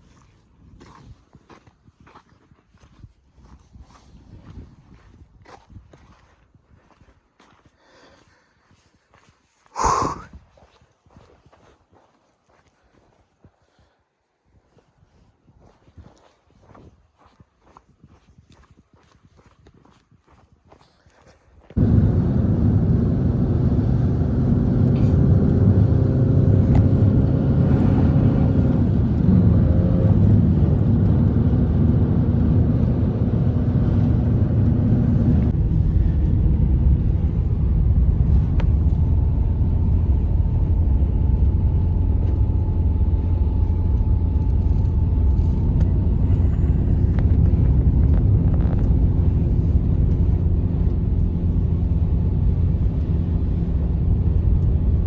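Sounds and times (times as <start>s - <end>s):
blizzard wind blowing: 21.8s - 55.0s.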